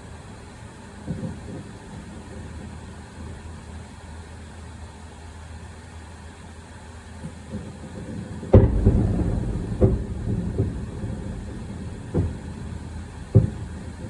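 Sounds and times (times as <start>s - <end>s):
fireworks shells bursting: 8.5s - 14.0s
steady low rumble: 8.6s - 14.0s.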